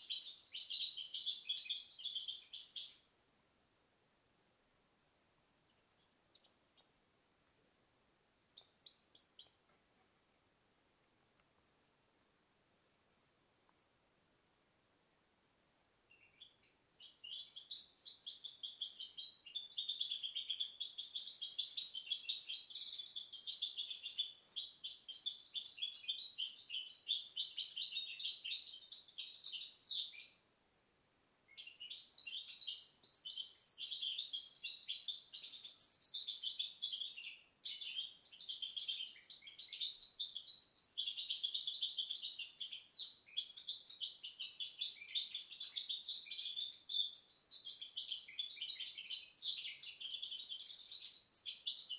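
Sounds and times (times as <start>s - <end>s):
finch twittering song: 0.0s - 3.2s, 16.1s - 30.6s, 31.5s - 51.9s.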